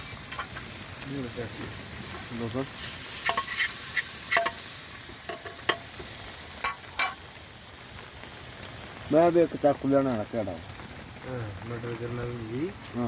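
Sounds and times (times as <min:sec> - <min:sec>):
food sizzling in a pan: 0:00.0 - 0:13.0
metal spoon clinking on pan: 0:03.2 - 0:03.7, 0:04.3 - 0:04.6, 0:05.3 - 0:05.9, 0:06.6 - 0:07.2.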